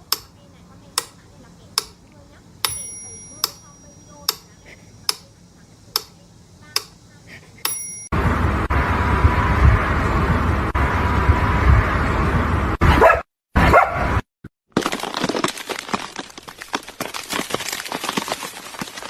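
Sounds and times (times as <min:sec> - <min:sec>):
sharp metallic ticks: 0:00.0 - 0:00.4, 0:01.0 - 0:07.0, 0:07.6 - 0:08.1.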